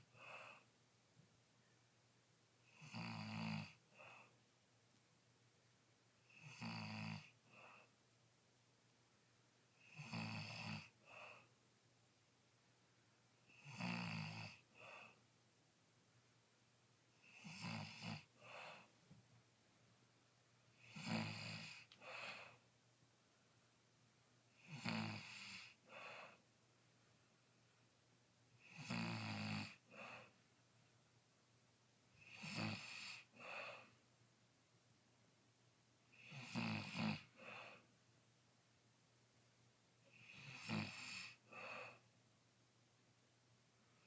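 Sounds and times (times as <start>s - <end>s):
person snoring: 2.7s - 4.3s, 6.3s - 7.9s, 9.8s - 11.5s, 13.5s - 15.2s, 17.2s - 18.9s, 20.8s - 22.6s, 24.6s - 26.4s, 28.6s - 30.3s, 32.2s - 34.0s, 36.1s - 37.8s, 40.0s - 42.0s.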